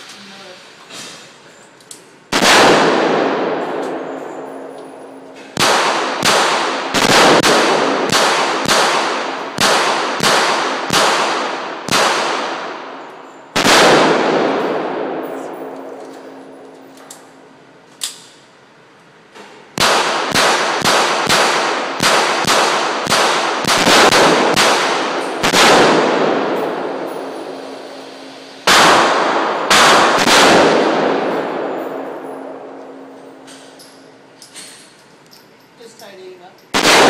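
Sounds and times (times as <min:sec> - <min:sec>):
gunshots with echoing tail: 0:02.3 - 0:16.7, 0:19.8 - 0:33.7, 0:36.7 - 0:37.0.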